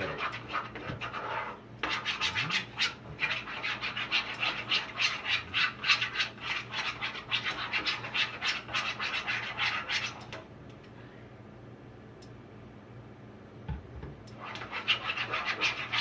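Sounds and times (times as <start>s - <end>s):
rhythmic scraping strokes: 0.0s - 10.3s, 14.4s - 16.0s.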